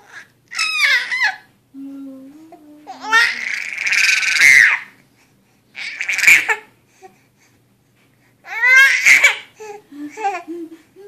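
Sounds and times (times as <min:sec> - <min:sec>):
baby squealing with laughter: 0:00.0 - 0:01.5, 0:03.2 - 0:04.9, 0:05.8 - 0:06.7, 0:08.5 - 0:09.5.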